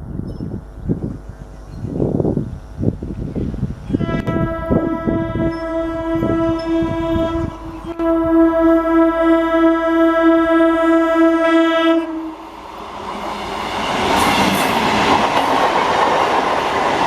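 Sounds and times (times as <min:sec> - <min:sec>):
train horn blasts: 0:03.9 - 0:12.5.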